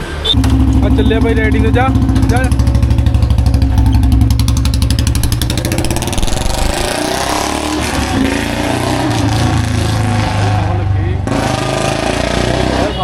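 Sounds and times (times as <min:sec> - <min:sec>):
motorcycle engine pulling away: 0:00.4 - 0:10.5.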